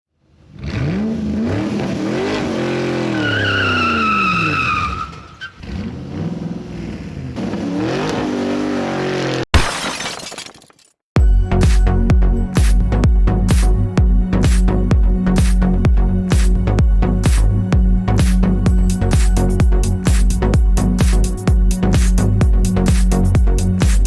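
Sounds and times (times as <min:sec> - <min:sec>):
race car engine revving: 0:00.5 - 0:03.6
high tyre squeal: 0:02.2 - 0:06.0.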